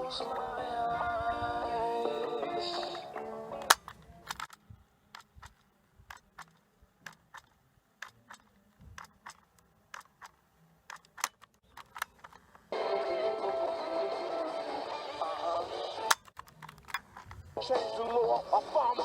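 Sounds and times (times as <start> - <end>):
small plastic and metal parts clicking: 3.6 - 12.7, 16.1 - 17.4.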